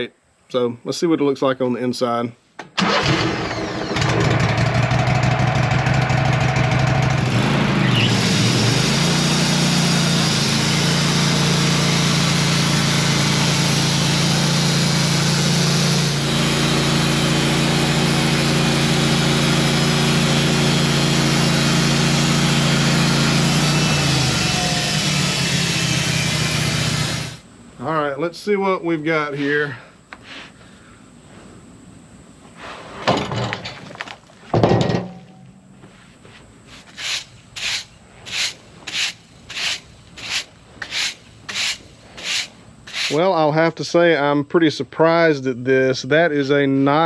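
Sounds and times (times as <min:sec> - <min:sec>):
band sawmill cutting log: 0:02.8 - 0:27.4, 0:36.9 - 0:43.3.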